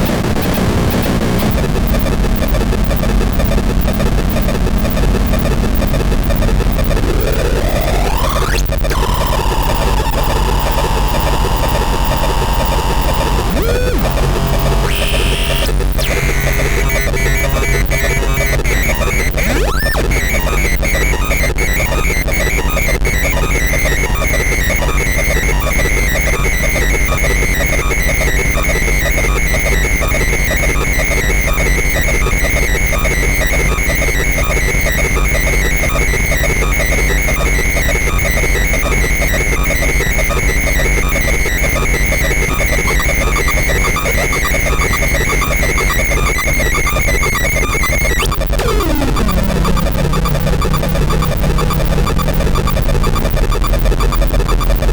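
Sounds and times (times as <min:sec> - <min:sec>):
fast crackling pulses: 0:00.0 - 0:54.9
sustained high whine: 0:07.7 - 0:54.0
constant low hum: 0:10.0 - 0:53.3.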